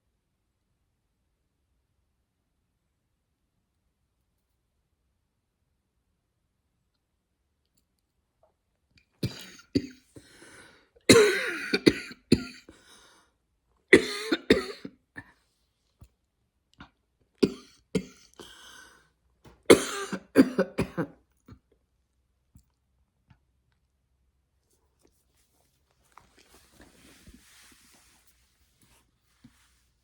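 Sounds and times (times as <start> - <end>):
woman coughing: 9.2 - 10.0, 11.1 - 12.7, 14.0 - 15.0, 17.4 - 18.7, 19.7 - 21.2.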